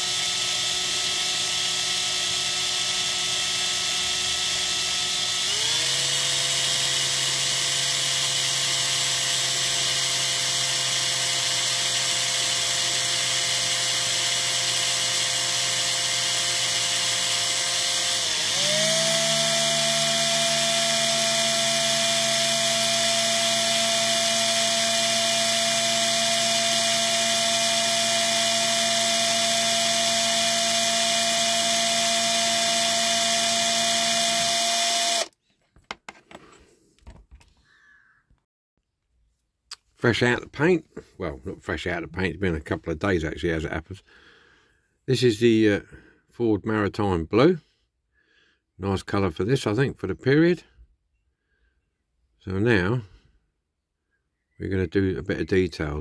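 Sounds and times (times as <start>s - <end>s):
small electric drill running: 0.0s - 35.4s.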